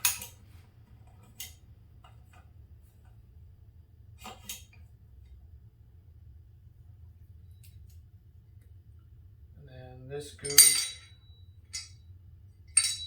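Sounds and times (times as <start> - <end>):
steady low hum: 10.2 - 11.9, 12.8 - 13.0
metal parts clicking: 10.4 - 11.1, 12.8 - 13.0.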